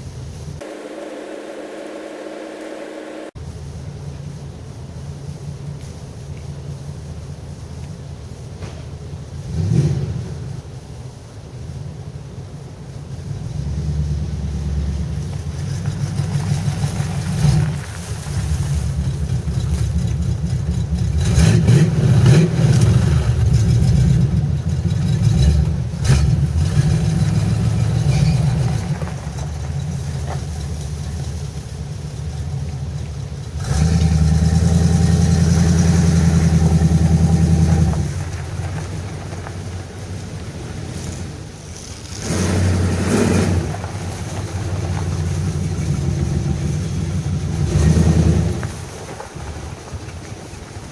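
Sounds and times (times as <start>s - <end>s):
loud engine revving: 0.6s - 3.4s, 9.4s - 10.4s, 13.5s - 29.2s, 33.6s - 38.2s, 42.0s - 48.7s.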